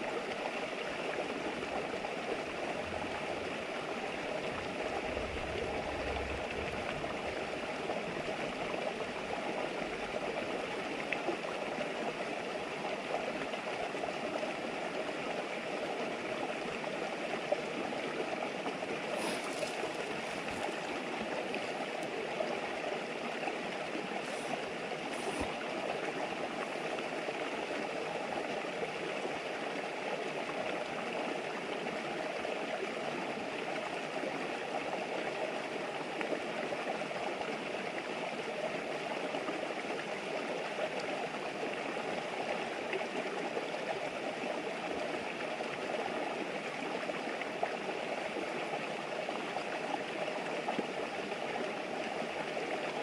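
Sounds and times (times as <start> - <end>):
water running over stones: 1.2 - 28.4.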